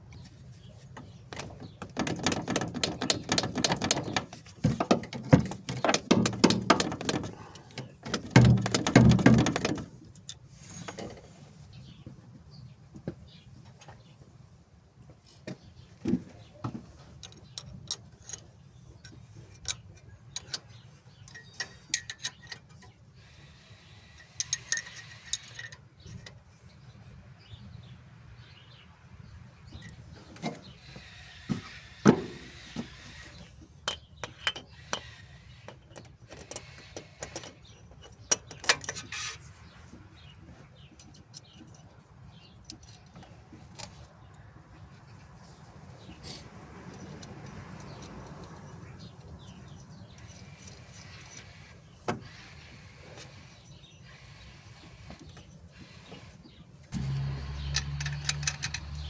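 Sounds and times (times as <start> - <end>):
metal tools clanking: 17.2 - 23.0, 33.3 - 44.0, 46.9 - 51.7, 57.0 - 59.0.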